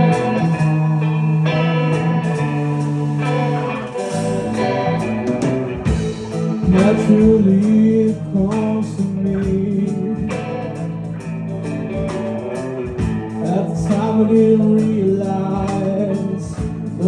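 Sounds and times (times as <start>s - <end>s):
hard rock band playing: 0.0s - 17.0s
drum hits: 4.1s - 7.4s.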